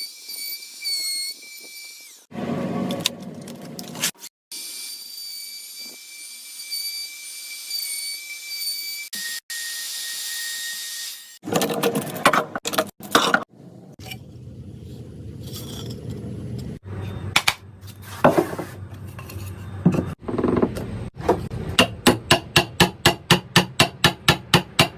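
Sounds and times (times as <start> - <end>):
low hum: 13.5 - 17.9.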